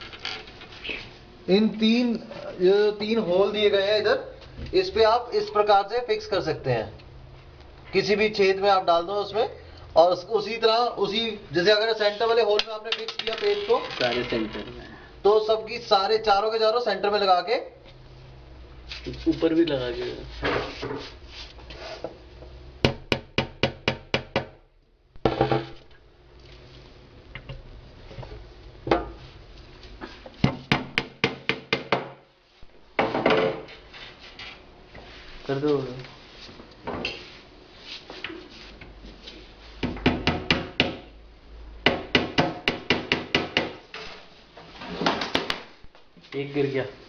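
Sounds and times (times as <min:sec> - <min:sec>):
hammer striking wood: 0:22.8 - 0:24.6, 0:30.4 - 0:32.2, 0:39.8 - 0:41.1, 0:41.8 - 0:43.8
knocking taps on table panels: 0:22.8 - 0:24.6.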